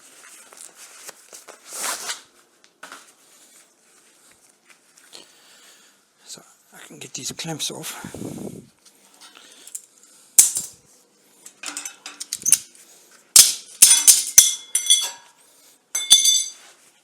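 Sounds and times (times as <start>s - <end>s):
metal clamps clanking and rattling: 11.5s - 12.6s, 13.4s - 15.3s, 16.0s - 16.6s.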